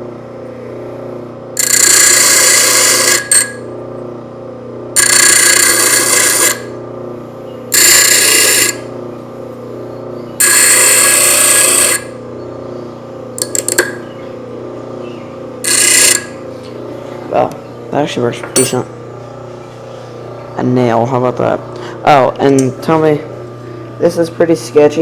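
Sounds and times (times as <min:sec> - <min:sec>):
grinder motor humming: 0:00.0 - 0:25.0
metal grinding rasp: 0:01.6 - 0:03.5, 0:05.0 - 0:06.7, 0:07.7 - 0:08.8, 0:10.4 - 0:12.2, 0:15.6 - 0:16.4.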